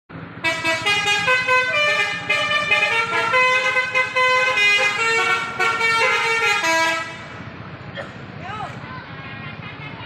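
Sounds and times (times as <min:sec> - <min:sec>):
bus horn playing a melody: 0:00.4 - 0:07.5.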